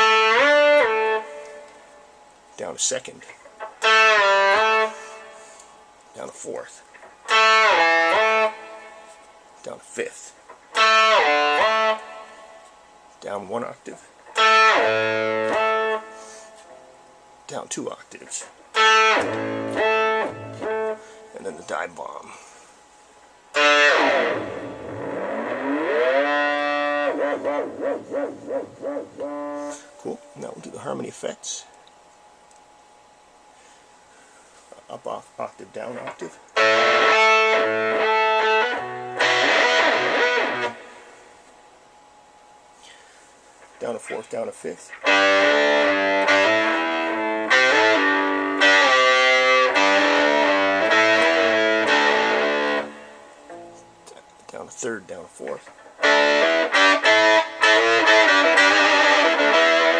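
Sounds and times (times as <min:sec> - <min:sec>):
electric guitar pitch dive: 0:00.0 - 0:01.9, 0:03.6 - 0:05.6, 0:07.2 - 0:09.2, 0:10.7 - 0:12.7, 0:14.2 - 0:16.5, 0:18.7 - 0:21.2, 0:23.5 - 0:30.4, 0:36.5 - 0:41.5, 0:44.8 - 0:54.2, 0:56.0 - 0:59.9.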